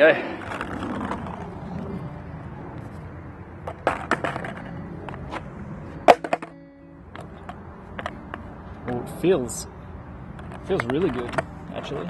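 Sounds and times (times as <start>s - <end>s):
skateboard wheels rumbling: 0.0s - 9.0s, 10.3s - 12.0s
skateboard clacks: 3.6s - 5.4s, 6.0s - 6.6s, 7.2s - 8.5s, 10.3s - 12.0s.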